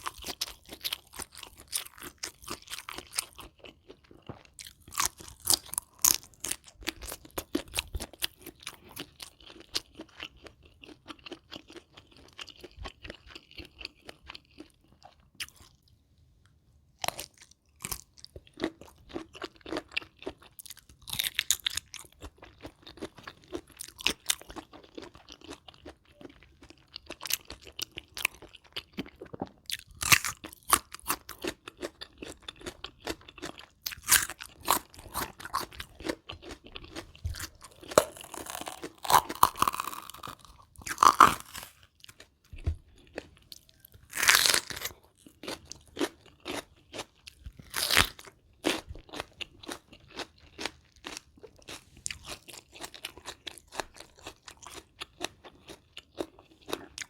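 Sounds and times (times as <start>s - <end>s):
person chewing crisp food: 0.0s - 57.0s.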